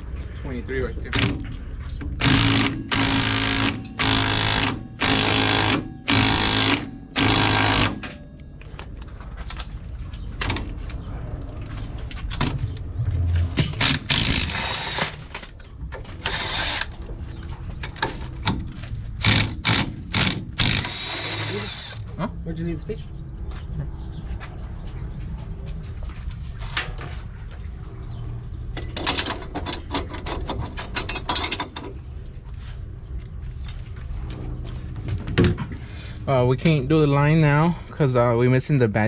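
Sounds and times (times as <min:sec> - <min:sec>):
power tool buzzing: 0:02.2 - 0:08.0, 0:19.2 - 0:22.0
tools and parts clinking: 0:13.6 - 0:19.4, 0:28.7 - 0:32.1.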